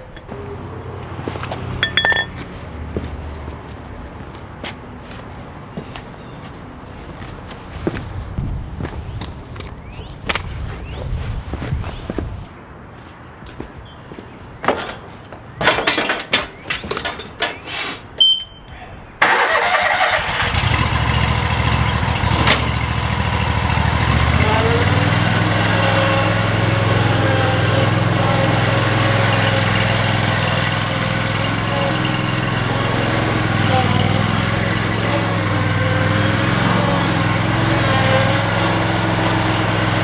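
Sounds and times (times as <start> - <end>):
lawn mower engine running: 0.0 - 5.4, 19.2 - 40.0.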